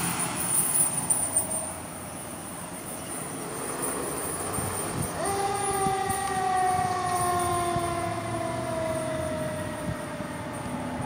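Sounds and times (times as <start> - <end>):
mechanical siren winding down: 4.9 - 11.0.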